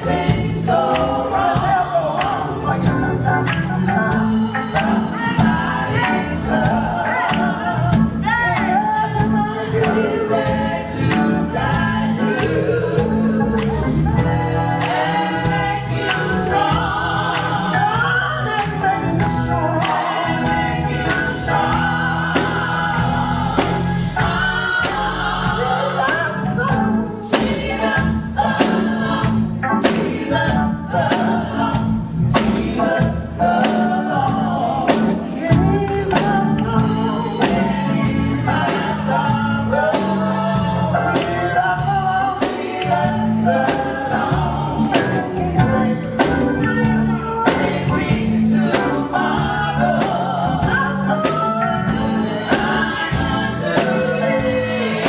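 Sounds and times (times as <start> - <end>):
band playing: 0.0 - 55.0
group of voices singing: 0.0 - 55.0
steady drum beat: 0.0 - 55.0.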